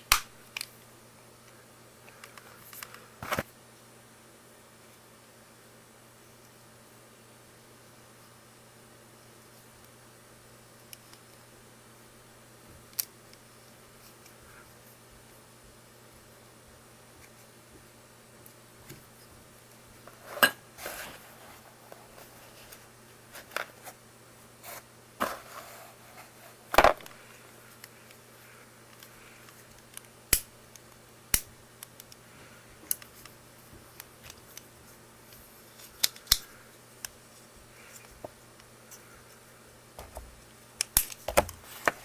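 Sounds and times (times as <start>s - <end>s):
faint mains hum: 0.0s - 42.0s
plastic parts clicking: 35.8s - 36.5s.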